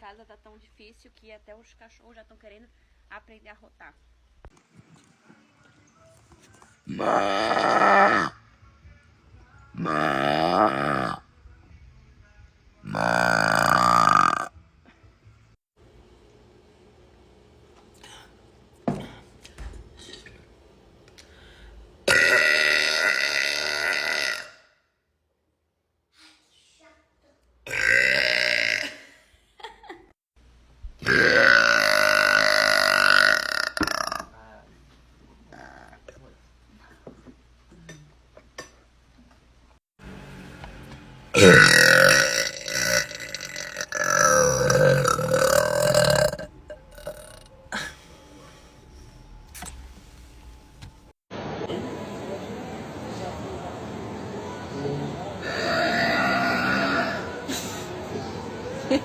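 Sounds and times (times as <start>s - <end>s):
person burping loudly: 6.9s - 8.4s, 9.8s - 11.2s, 12.8s - 14.5s, 22.1s - 24.7s, 27.7s - 29.1s, 31.0s - 34.3s, 35.5s - 36.2s, 41.4s - 48.0s, 55.4s - 57.4s.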